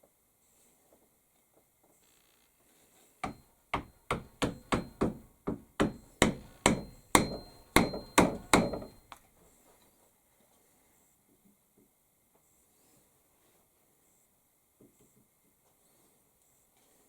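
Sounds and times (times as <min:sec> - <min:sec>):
hammer blows with metallic ring: 0:03.2 - 0:09.1.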